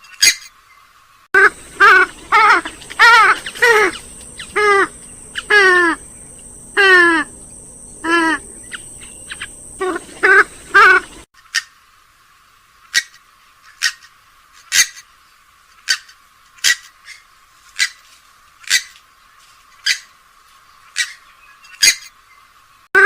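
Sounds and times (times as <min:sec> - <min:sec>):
rail bird sharp calls: 0:01.4 - 0:11.7.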